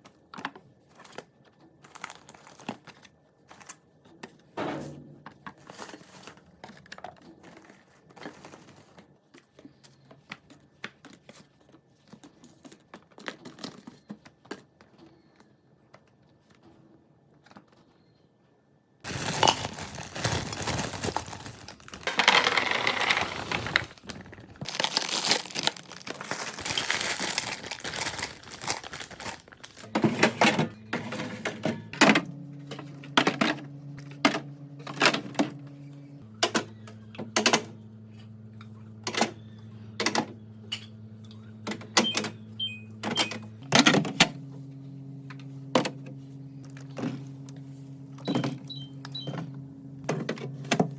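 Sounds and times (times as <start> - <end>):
plastic packaging crinkling: 19.0 - 30.0.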